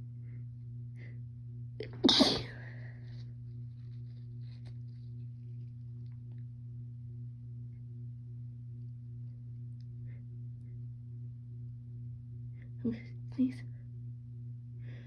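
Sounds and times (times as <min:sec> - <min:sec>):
low electrical hum: 0:00.0 - 0:15.0
woman sneezing: 0:01.8 - 0:02.8.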